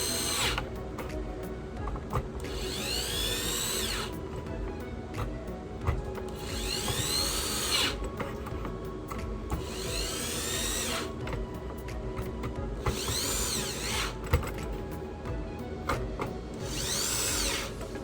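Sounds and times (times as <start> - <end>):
electric screwdriver whirring: 0.0 - 1.2, 1.8 - 14.8, 15.8 - 18.0
background music: 0.0 - 18.0.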